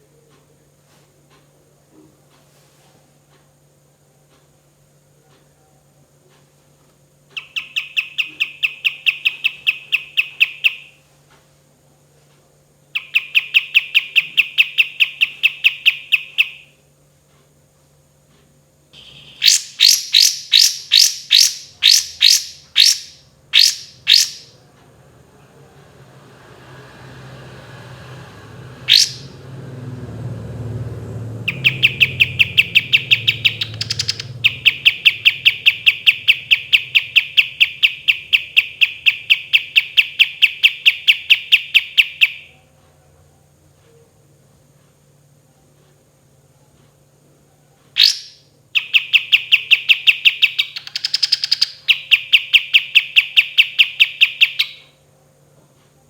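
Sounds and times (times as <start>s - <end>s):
bird singing rattling trills: 7.4s - 11.0s, 12.9s - 16.7s, 19.0s - 24.6s, 28.8s - 29.4s, 31.2s - 42.6s, 48.0s - 54.9s
sharp upward whistle: 28.8s - 29.4s, 31.4s - 42.4s.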